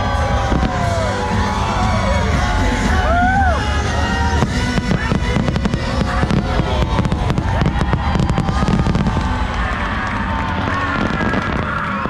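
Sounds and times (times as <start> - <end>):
fireworks bangs and crackles: 0.0 - 12.0
loud music soundtrack: 0.0 - 12.0.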